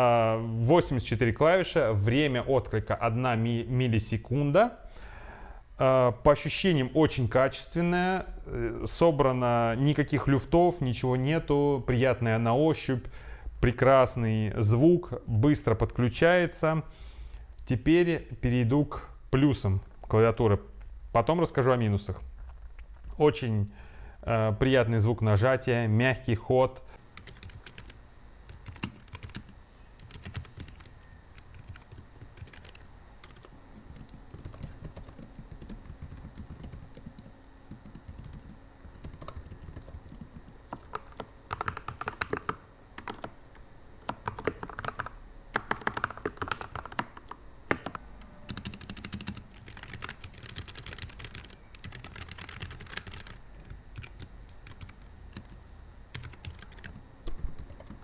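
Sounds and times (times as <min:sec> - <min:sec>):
mechanical keyboard typing: 0:27.2 - 0:43.4, 0:44.0 - 0:58.0.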